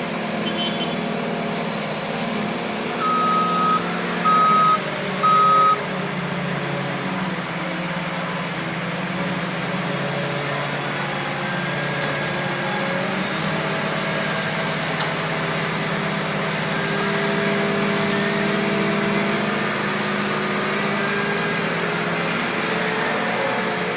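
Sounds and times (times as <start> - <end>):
heavy vehicle engine running: 0.0 - 23.9
backup alarm beep: 3.0 - 5.8.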